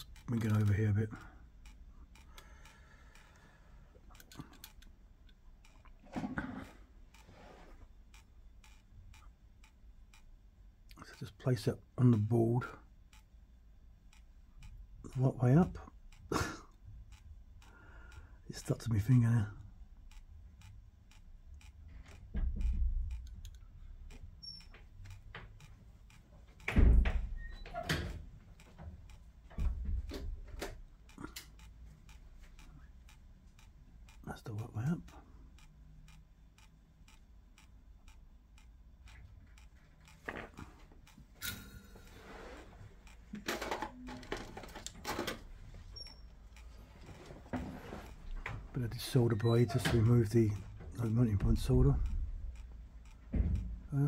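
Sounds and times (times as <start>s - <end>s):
light ticks: 0.0s - 6.0s, 6.6s - 13.4s, 14.1s - 43.5s, 44.1s - 54.0s
tweezers clicking on small parts: 0.0s - 6.0s, 8.1s - 11.0s, 12.2s - 17.8s, 18.5s - 26.7s, 30.0s - 42.1s, 43.0s - 54.0s
dull knocks and thumps: 53.3s - 53.9s.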